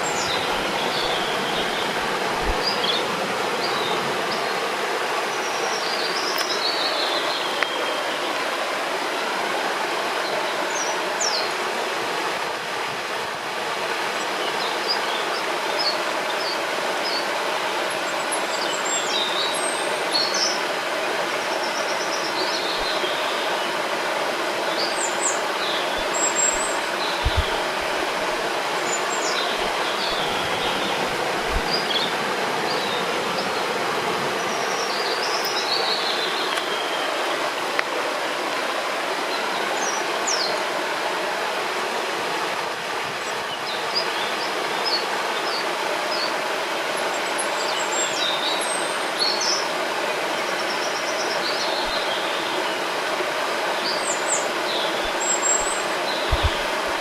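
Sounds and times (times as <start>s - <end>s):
birds chirping: 0.0s - 4.7s, 24.6s - 37.5s, 50.3s - 57.0s
river flowing: 0.0s - 57.0s.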